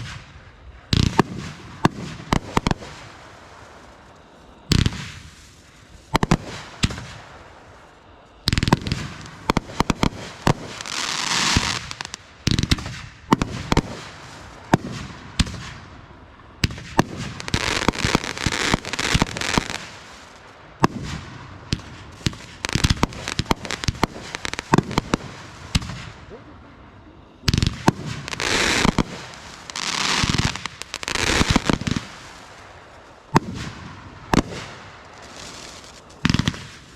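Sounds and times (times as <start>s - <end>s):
dense firework crackling: 0.0s - 36.9s
firework bangs and booms: 0.0s - 36.9s.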